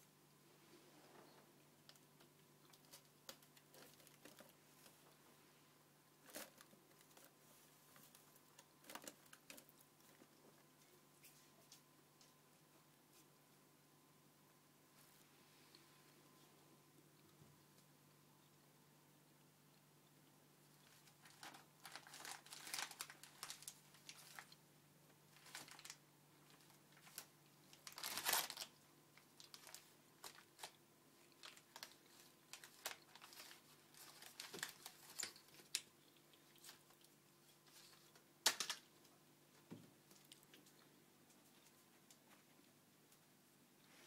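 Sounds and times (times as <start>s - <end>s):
packaging crinkling and rustling: 20.8s - 24.6s, 25.3s - 35.9s, 36.5s - 38.9s.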